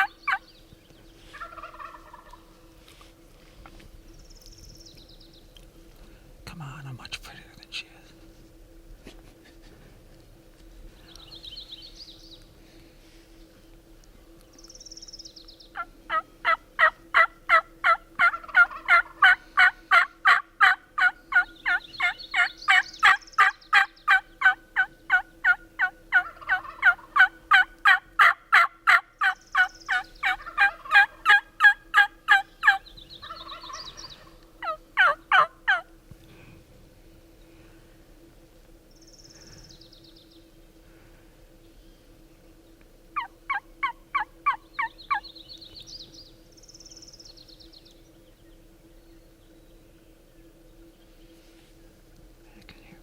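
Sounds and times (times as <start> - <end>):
turkey yelping: 0.0 - 0.4, 1.4 - 2.4, 15.8 - 35.9, 43.2 - 45.2
songbird chirps: 0.0 - 8.1, 10.2 - 17.0, 17.6 - 35.8, 38.3 - 40.8, 41.5 - 53.0.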